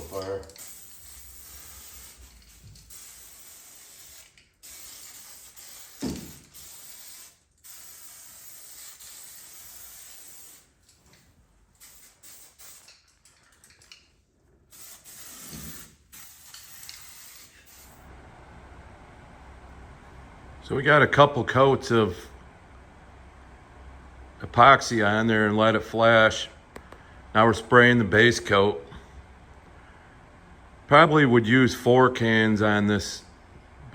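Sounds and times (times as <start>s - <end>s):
spray paint can hissing: 0.0s - 10.7s, 11.8s - 13.1s, 14.7s - 18.1s.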